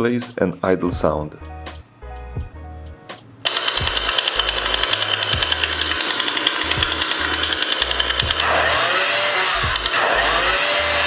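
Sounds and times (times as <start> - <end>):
motorized chainblade rattling: 3.5 - 11.0.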